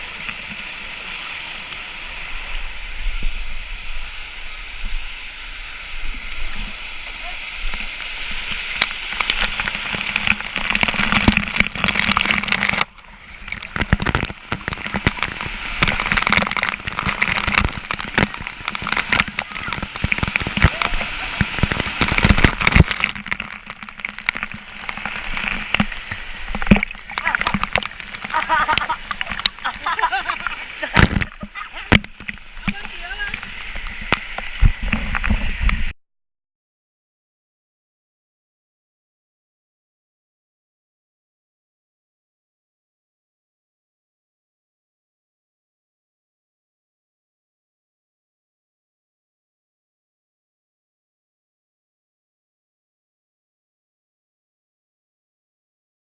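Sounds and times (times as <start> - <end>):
waterfall rushing: 0.0 - 35.9.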